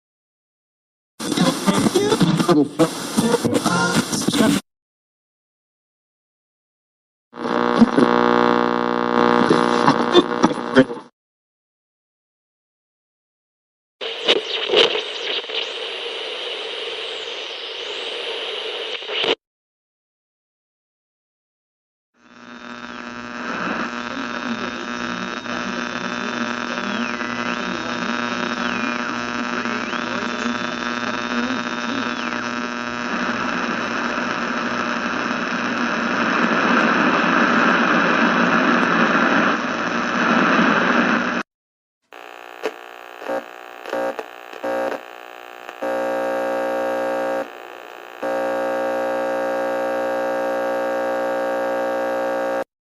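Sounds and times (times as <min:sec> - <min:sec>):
radio static hiss: 0:01.2 - 0:04.6, 0:07.4 - 0:11.1, 0:14.0 - 0:19.4, 0:22.2 - 0:41.5, 0:42.1 - 0:52.7
buzzing hum: 0:07.4 - 0:10.8, 0:22.2 - 0:36.4, 0:42.1 - 0:52.7.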